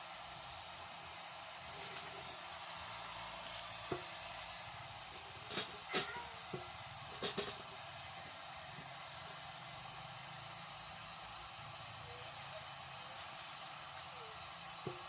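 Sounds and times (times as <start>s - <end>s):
steady hiss: 0.0s - 15.0s.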